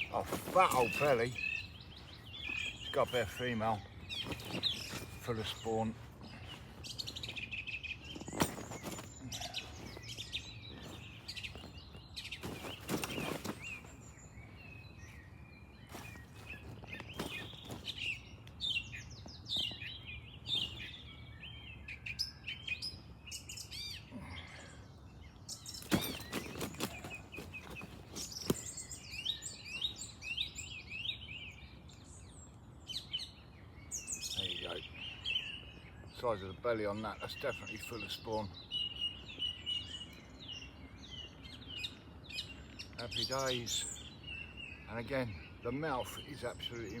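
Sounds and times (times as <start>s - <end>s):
birds chirping: 0.0s - 47.0s
knocks or rustles: 25.8s - 28.7s.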